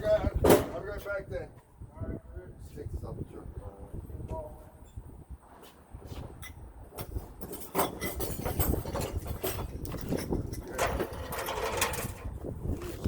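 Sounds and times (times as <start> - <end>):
clatter of knocks and rustling: 6.9 - 13.0.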